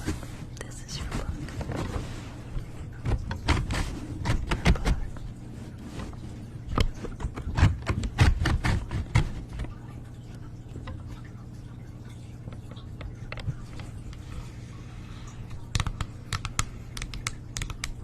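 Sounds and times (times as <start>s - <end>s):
steady low hum: 0.0s - 18.0s
clicks and light taps: 15.5s - 18.0s.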